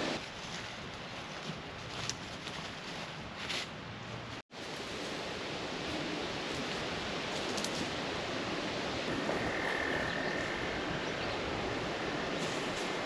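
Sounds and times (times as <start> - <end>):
rushing outdoor background noise: 0.0 - 13.0
frog trilling: 9.1 - 12.3.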